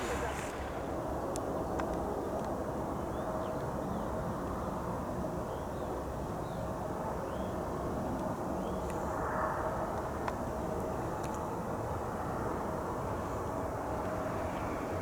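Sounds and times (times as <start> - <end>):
distant engines rumbling: 0.0 - 1.9.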